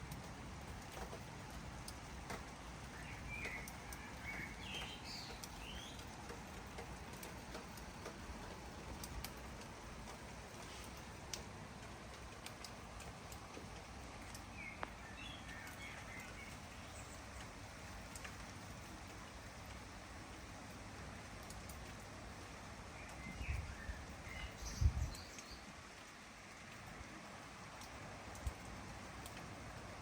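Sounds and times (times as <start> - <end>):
light rain falling: 0.0 - 30.0
raindrops ticking: 0.0 - 30.0
small bird chirping: 2.8 - 6.3, 14.2 - 17.6, 23.0 - 25.7.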